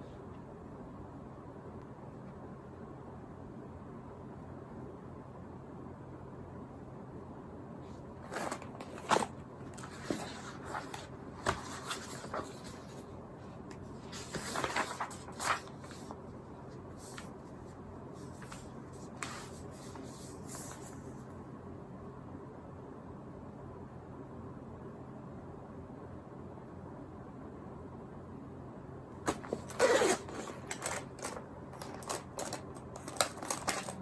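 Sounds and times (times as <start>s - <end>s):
steady low hum: 0.0s - 34.0s
rustling: 29.3s - 34.0s.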